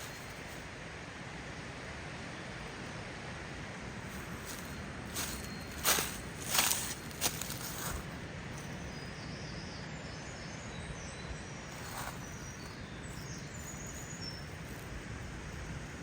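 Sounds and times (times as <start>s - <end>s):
rushing outdoor background noise: 0.0s - 16.0s
faint high bird chirps: 4.4s - 8.0s, 8.6s - 15.9s.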